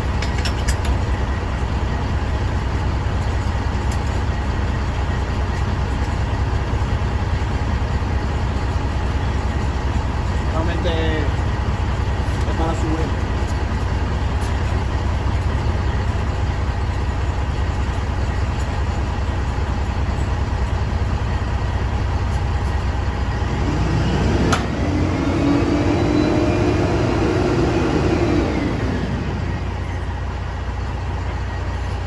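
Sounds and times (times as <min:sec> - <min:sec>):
truck engine idling: 0:00.0 - 0:32.0
second engine tone rising: 0:23.4 - 0:30.1.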